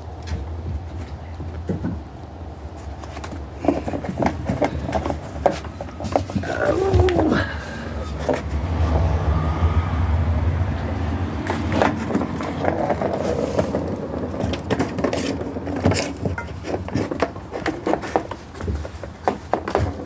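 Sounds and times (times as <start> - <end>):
kittens scuffling on hard surface: 0.0 - 9.3, 10.8 - 20.0
low rumble: 7.0 - 15.7.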